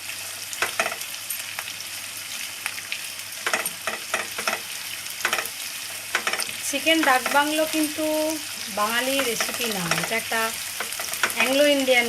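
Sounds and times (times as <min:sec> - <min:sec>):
onions sizzling in hot oil: 0:00.0 - 0:12.0
spatula scraping pan: 0:03.5 - 0:08.1, 0:09.1 - 0:11.8.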